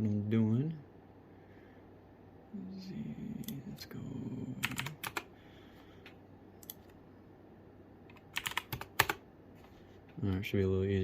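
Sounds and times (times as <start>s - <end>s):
computer keyboard keystrokes: 4.6s - 5.3s, 6.0s - 7.0s, 8.1s - 9.2s.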